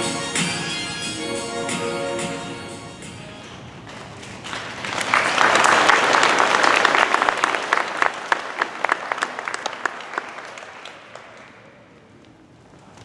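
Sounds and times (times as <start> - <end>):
audience applauding: 4.0 - 11.9.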